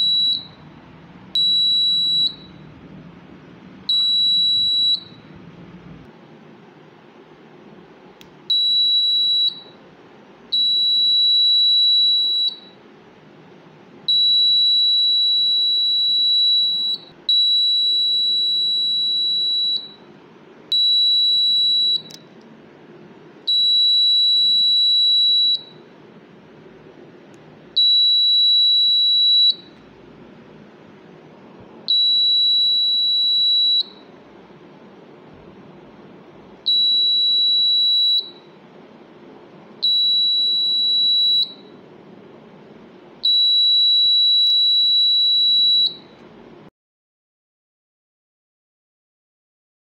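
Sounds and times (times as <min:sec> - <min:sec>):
door alarm buzzer beeping: 0:00.0 - 0:00.6, 0:01.4 - 0:02.6, 0:03.9 - 0:05.3, 0:08.5 - 0:09.7, 0:10.6 - 0:12.7, 0:14.1 - 0:20.0, 0:20.8 - 0:22.2, 0:23.5 - 0:25.8, 0:27.8 - 0:29.8, 0:31.9 - 0:34.0, 0:36.7 - 0:38.5, 0:39.8 - 0:41.7, 0:43.3 - 0:46.1.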